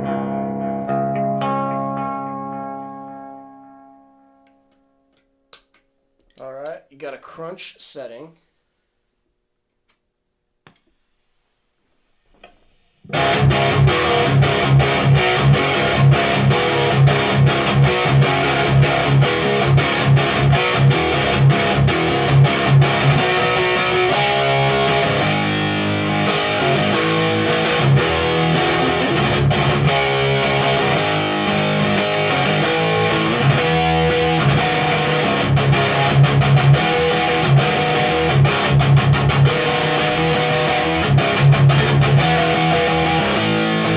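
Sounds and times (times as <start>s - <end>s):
distorted electric guitar riff: 13.1s - 43.9s.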